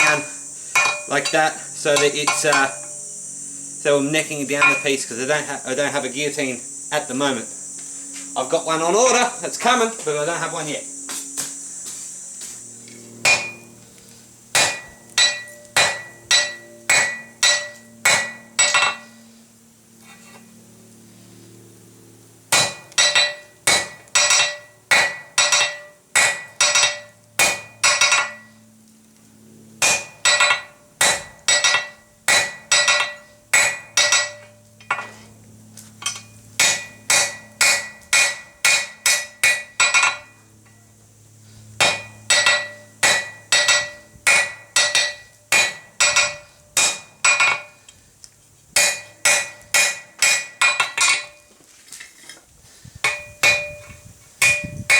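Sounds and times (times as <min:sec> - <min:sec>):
hammer ringing on anvil: 0:00.0 - 0:03.0, 0:04.5 - 0:05.2, 0:13.2 - 0:13.7, 0:14.6 - 0:19.2, 0:22.5 - 0:28.5, 0:29.8 - 0:35.2, 0:36.0 - 0:40.8, 0:41.8 - 0:47.8, 0:48.8 - 0:51.5, 0:53.0 - 0:54.9.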